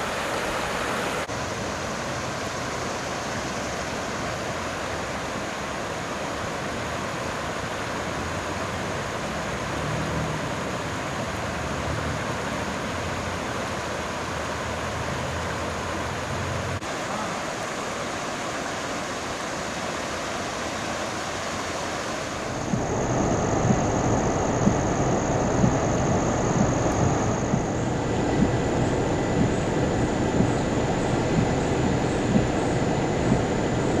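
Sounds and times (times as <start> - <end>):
floodwater rushing: 0.0 - 34.0
low rumble of water: 21.6 - 34.0.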